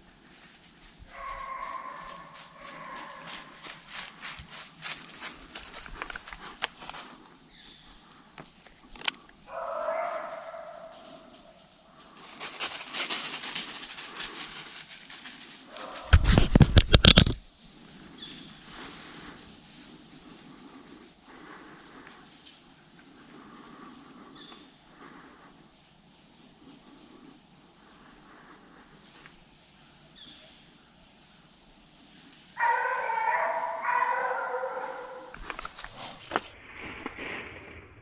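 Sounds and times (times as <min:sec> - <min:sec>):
crackling and rustling: 0:00.0 - 0:09.5, 0:10.1 - 0:29.8, 0:35.3 - 0:38.0
hounds baying: 0:01.1 - 0:03.9, 0:09.5 - 0:11.6, 0:15.5 - 0:16.4, 0:32.6 - 0:35.6.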